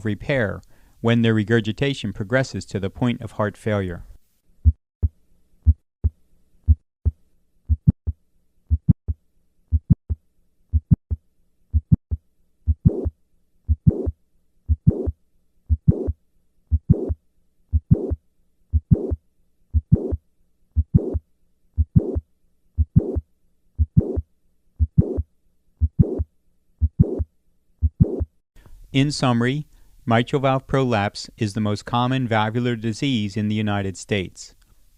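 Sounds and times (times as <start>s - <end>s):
heartbeat lub-dub: 5.6s - 9.1s, 9.7s - 11.2s, 11.8s - 13.1s, 13.7s - 20.2s, 20.8s - 21.2s, 21.8s - 22.2s, 22.8s - 23.2s, 23.8s - 24.2s, 24.8s - 28.3s
heart murmur: 6.7s - 8.1s, 8.7s - 9.1s, 9.7s - 10.1s, 10.7s - 11.1s, 11.8s - 12.1s, 12.7s - 13.1s, 13.7s - 14.1s, 14.7s - 19.2s, 19.8s - 20.2s, 20.8s - 21.2s, 21.8s - 22.2s, 22.8s - 23.2s, 23.8s - 24.2s, 24.8s - 25.2s, 25.8s - 27.2s, 27.8s - 28.3s.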